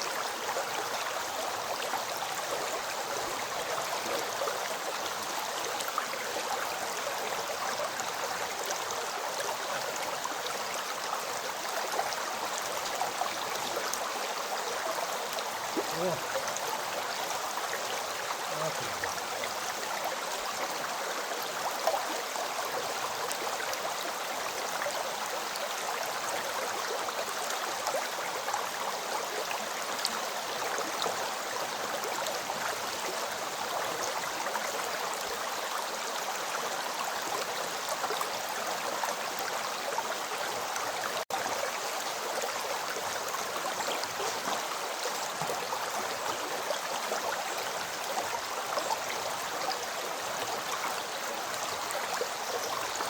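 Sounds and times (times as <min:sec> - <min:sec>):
stream flowing and babbling: 0:00.0 - 0:53.0.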